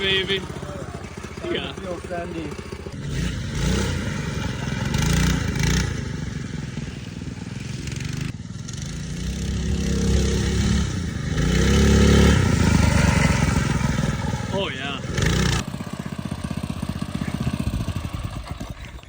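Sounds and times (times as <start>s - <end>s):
mini bike engine revving: 0.0s - 19.0s.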